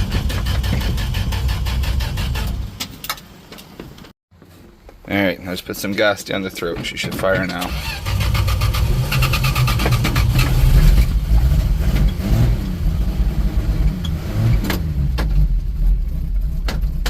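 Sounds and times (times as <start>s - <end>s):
pickup engine starting and revving: 0.0s - 2.9s, 7.6s - 17.0s.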